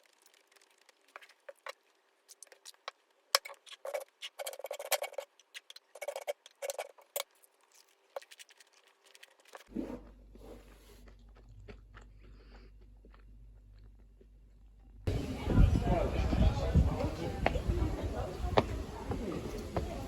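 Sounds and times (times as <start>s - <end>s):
small objects clicking and clattering: 0.0s - 9.7s.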